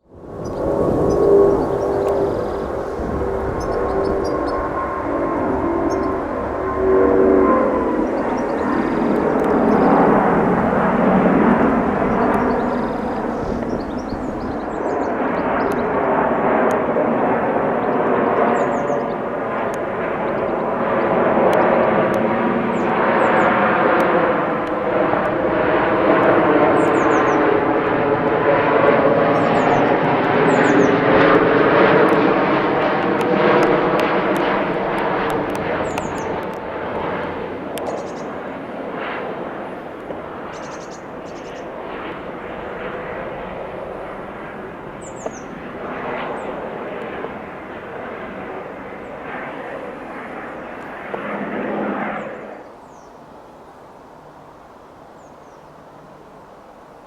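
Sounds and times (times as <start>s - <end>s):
jet airliner passing overhead: 0.0s - 57.0s
small birds chirping: 0.4s - 4.9s, 5.8s - 6.4s, 8.0s - 10.2s, 11.6s - 16.0s, 17.8s - 21.8s, 26.6s - 27.5s, 35.5s - 36.5s, 37.7s - 38.5s, 40.5s - 41.8s, 45.0s - 45.6s.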